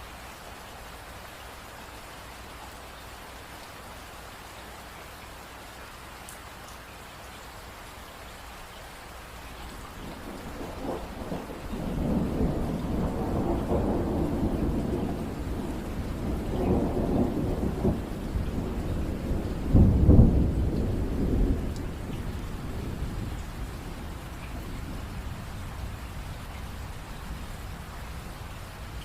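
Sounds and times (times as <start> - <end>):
steady rain: 0.0 - 29.0
rolling thunder: 9.9 - 29.0.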